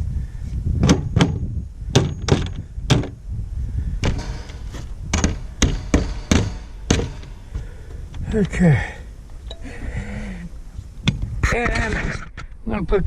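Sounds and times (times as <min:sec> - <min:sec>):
hammer tapping on wooden door: 0:04.0 - 0:07.7.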